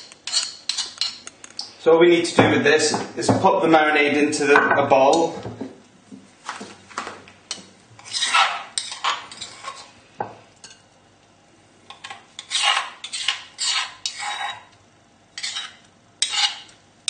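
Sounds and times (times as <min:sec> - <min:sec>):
utensil scraping a mortar: 0:00.0 - 0:01.2, 0:08.0 - 0:10.0, 0:12.0 - 0:14.7, 0:15.4 - 0:16.8.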